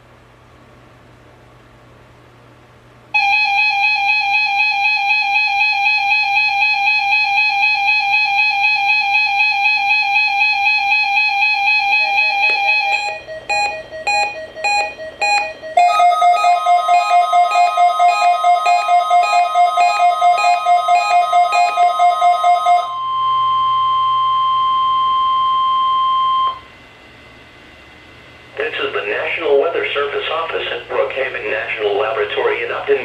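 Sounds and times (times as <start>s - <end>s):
fast-pulsing two-note alarm: 3.2s - 26.7s
short beeps: 12.0s - 16.0s, 22.9s - 26.7s.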